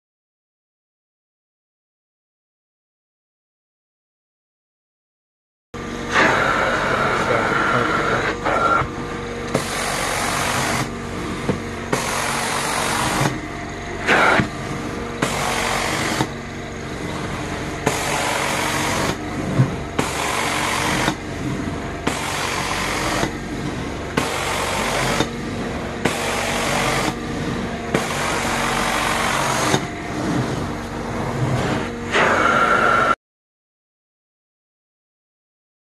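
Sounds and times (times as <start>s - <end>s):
carpet cleaning machine: 5.8s - 33.2s.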